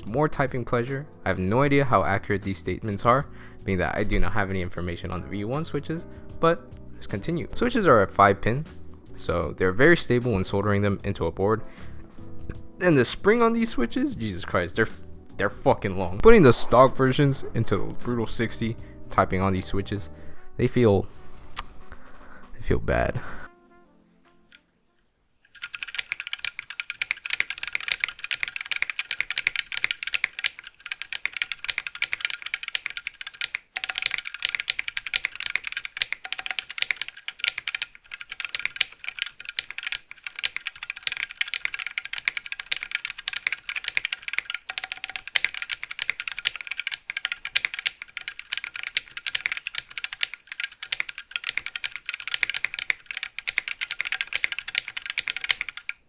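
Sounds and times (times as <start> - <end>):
mechanical keyboard typing: 25.5 - 56.0.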